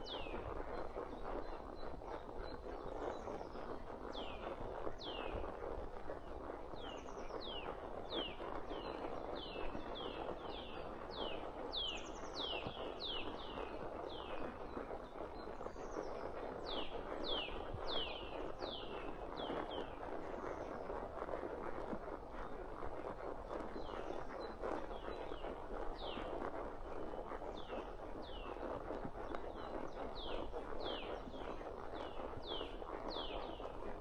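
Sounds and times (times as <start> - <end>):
steady rustling noise: 0.0 - 34.0
songbird chirping: 6.8 - 14.7, 16.6 - 20.0, 30.2 - 33.8.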